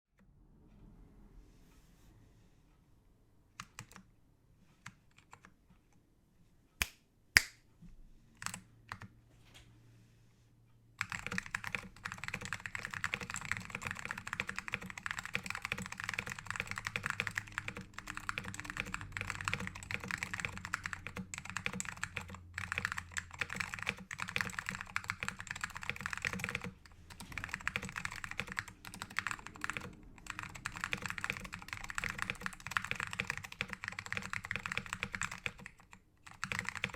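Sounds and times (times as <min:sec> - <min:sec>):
mechanical keyboard typing: 0:03.6 - 0:04.1, 0:08.4 - 0:09.1, 0:11.0 - 0:36.9.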